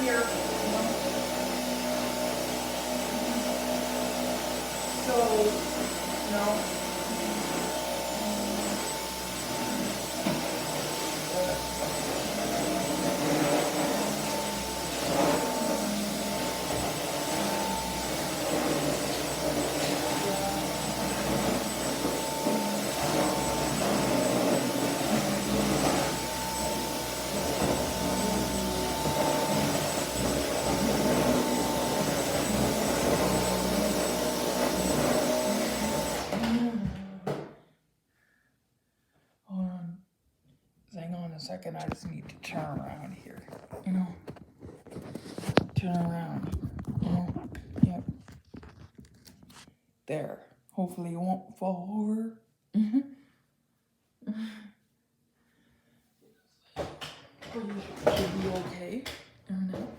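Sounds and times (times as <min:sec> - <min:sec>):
vacuum cleaner running: 0:00.0 - 0:37.5, 0:56.8 - 0:59.2.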